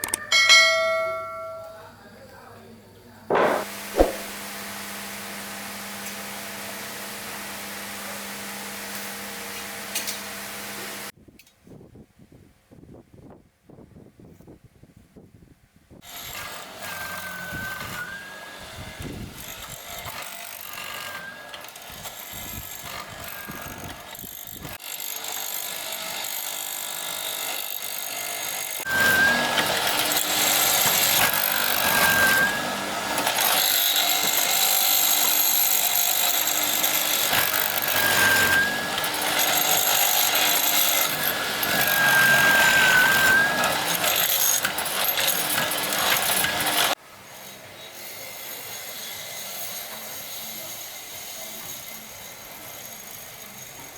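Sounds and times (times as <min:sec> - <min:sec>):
power tool whining through wood: 0:16.0 - 0:53.9.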